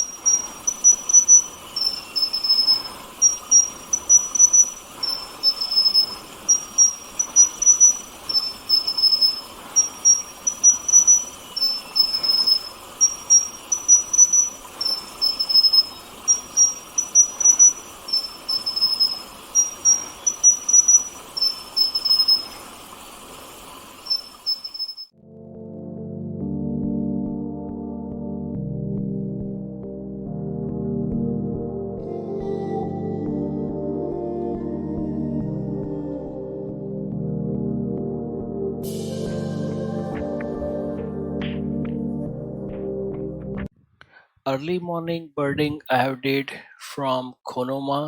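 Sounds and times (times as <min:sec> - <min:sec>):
faint steady hiss: 0:00.0 - 0:25.1.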